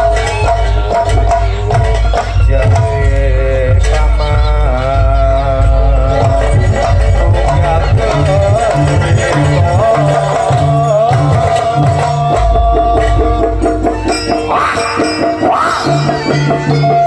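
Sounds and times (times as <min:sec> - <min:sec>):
gong-chime ensemble music: 0:07.8 - 0:17.0.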